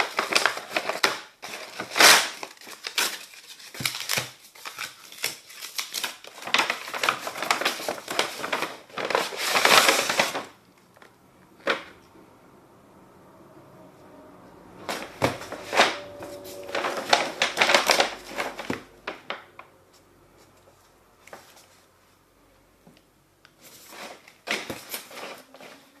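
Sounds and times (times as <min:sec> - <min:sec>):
packaging rustling and crinkling: 0:00.0 - 0:11.9, 0:14.9 - 0:19.6, 0:23.6 - 0:26.0.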